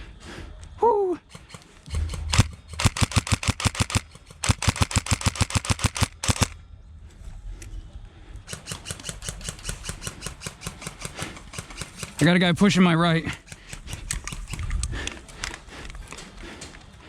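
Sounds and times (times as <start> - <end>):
airsoft rifle rapid fire: 1.3 - 6.6, 8.5 - 12.4, 13.3 - 14.6.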